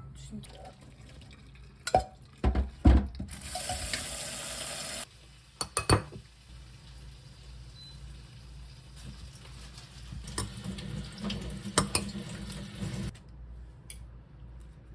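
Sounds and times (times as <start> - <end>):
kitchen tap running: 0.5 - 13.2.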